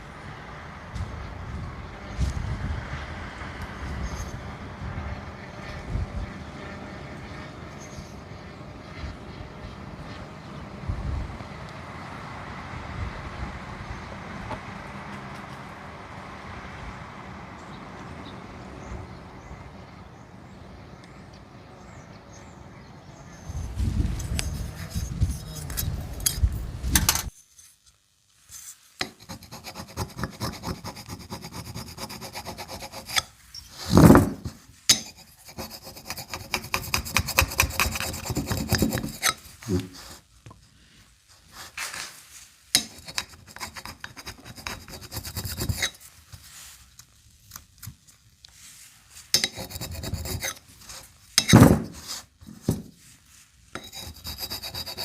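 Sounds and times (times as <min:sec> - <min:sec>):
hand scraping and rubbing: 0:23.5 - 0:47.2, 0:48.0 - 0:55.0.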